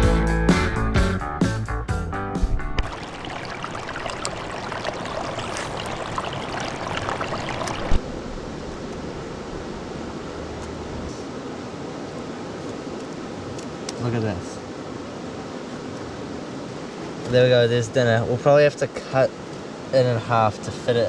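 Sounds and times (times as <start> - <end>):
background music: 0.0 - 2.8
river rushing over rapids: 2.9 - 21.0.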